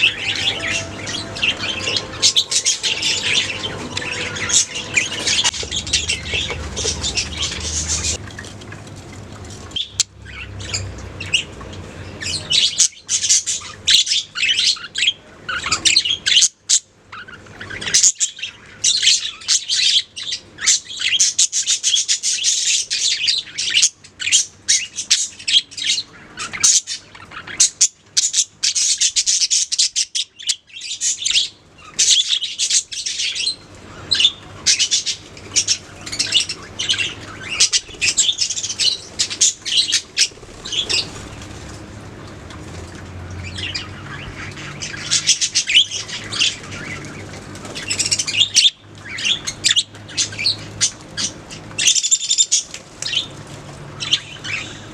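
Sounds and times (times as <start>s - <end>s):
budgerigars chirping: 0.0s - 8.2s, 9.8s - 41.4s, 43.4s - 53.3s, 54.0s - 54.9s.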